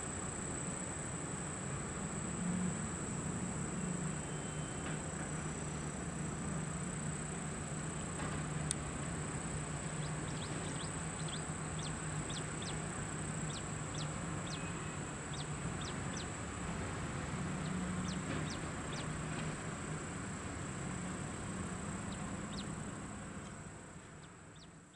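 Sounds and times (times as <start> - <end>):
thin high whine: 0.0 - 15.9
birds chirping: 9.9 - 16.4, 17.6 - 19.2, 22.0 - 24.9.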